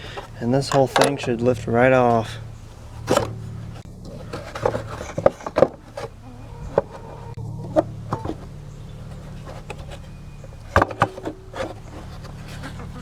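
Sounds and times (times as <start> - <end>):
steady low buzz: 0.0 - 13.0.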